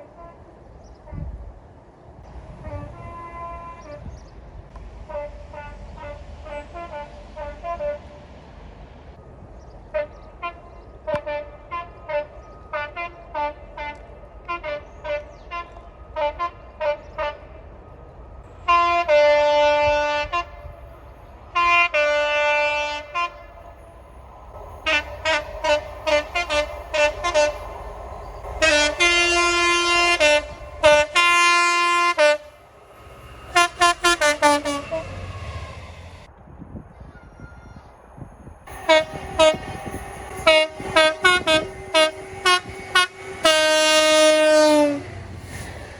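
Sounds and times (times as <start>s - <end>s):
passing trains rumbling: 0.0s - 45.9s
two-tone train horn blasts: 2.5s - 4.3s, 5.0s - 8.2s, 9.9s - 17.6s, 18.5s - 20.8s, 21.5s - 23.8s, 24.6s - 36.3s, 38.7s - 45.9s
train horn toots: 2.5s - 4.4s, 5.0s - 8.2s, 9.9s - 17.6s, 18.5s - 20.8s, 21.5s - 24.0s, 24.6s - 36.3s, 38.7s - 45.9s.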